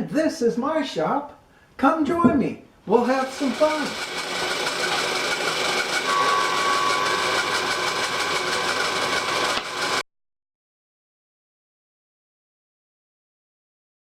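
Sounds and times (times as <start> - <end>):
machine tool whirring: 2.9 - 10.0
steady tone: 6.0 - 8.7.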